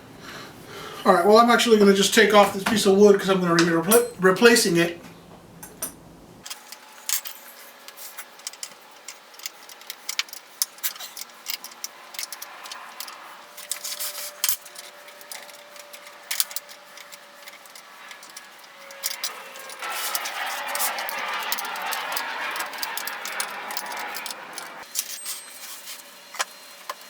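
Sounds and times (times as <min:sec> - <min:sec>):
hand tools clicking and tapping: 0:05.0 - 0:25.4.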